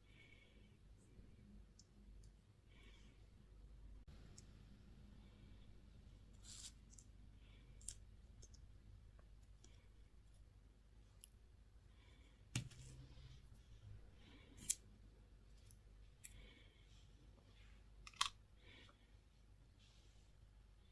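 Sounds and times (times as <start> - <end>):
small objects clicking and tapping: 7.8 - 9.8.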